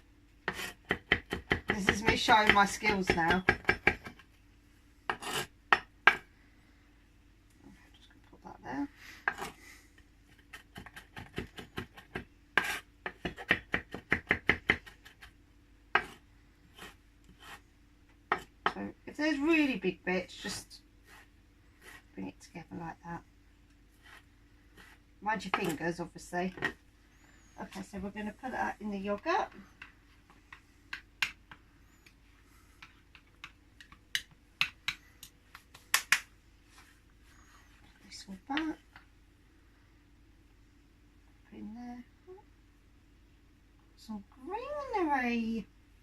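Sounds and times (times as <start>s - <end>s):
knife chopping on cutting board: 0.5s - 4.2s, 10.6s - 15.2s, 16.0s - 16.2s.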